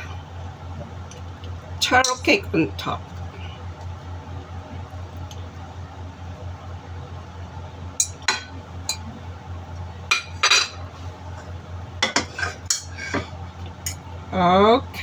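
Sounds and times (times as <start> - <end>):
low steady hum: 0.0 - 15.0
utensil clinking on dishware: 10.1 - 10.8, 12.0 - 14.0.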